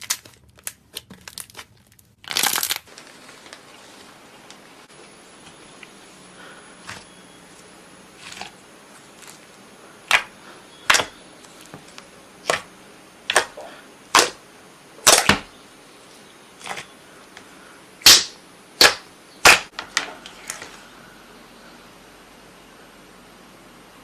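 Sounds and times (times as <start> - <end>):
balloons bursting: 15.0 - 15.5, 18.0 - 19.8.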